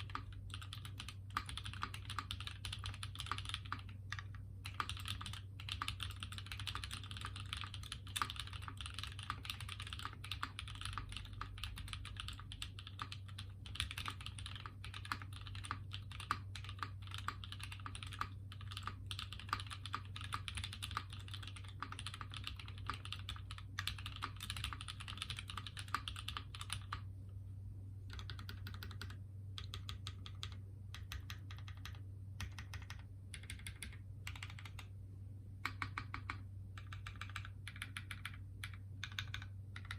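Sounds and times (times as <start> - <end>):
mechanical keyboard typing: 0.0 - 27.1, 28.1 - 34.9, 35.6 - 39.9.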